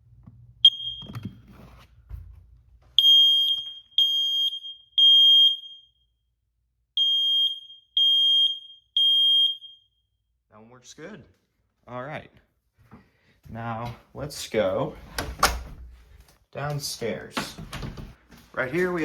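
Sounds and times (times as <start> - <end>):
smoke detector beeping: 0.6 - 1.2, 3.0 - 6.0, 7.0 - 9.9.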